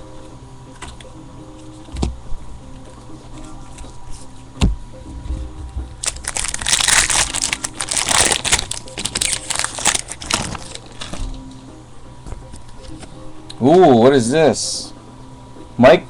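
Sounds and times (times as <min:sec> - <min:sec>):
foil wrapper crinkling: 0:06.0 - 0:11.3.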